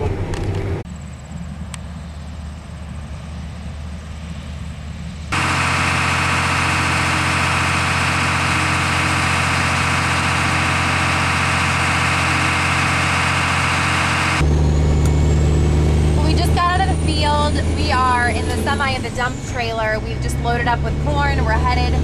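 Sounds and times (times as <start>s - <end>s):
machinery engine humming: 0.0s - 22.0s.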